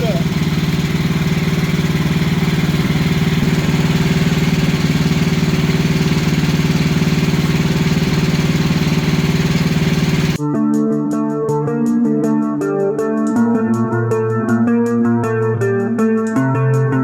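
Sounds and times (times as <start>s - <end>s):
sawmill engine running: 0.0s - 10.4s.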